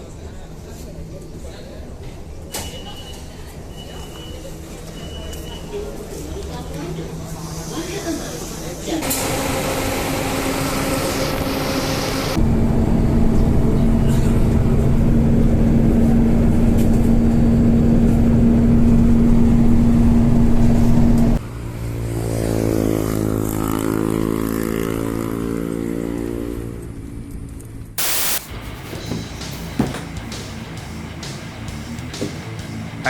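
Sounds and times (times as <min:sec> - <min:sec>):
loud burst of noise: 0:09.0 - 0:16.4, 0:28.0 - 0:28.8
engine pitch bending: 0:09.0 - 0:25.7
engine drone: 0:09.0 - 0:33.0.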